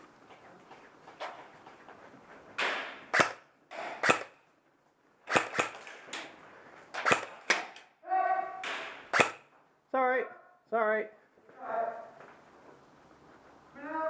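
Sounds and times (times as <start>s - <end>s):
airsoft gun shots: 2.6s - 4.4s, 5.3s - 5.9s, 7.0s - 7.8s, 8.6s - 9.5s.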